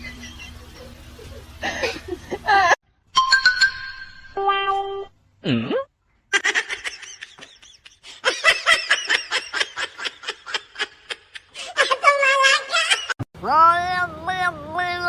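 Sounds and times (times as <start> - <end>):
high-pitched laughter: 6.3 - 13.2.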